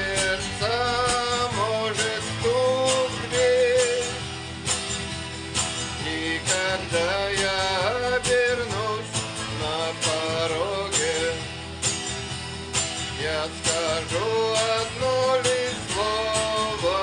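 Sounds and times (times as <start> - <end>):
instrumental rock music: 0.0 - 17.0.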